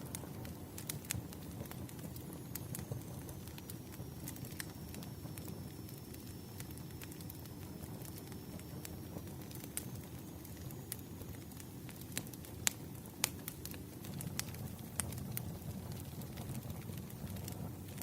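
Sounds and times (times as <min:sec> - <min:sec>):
firewood crackling: 0:00.0 - 0:18.0.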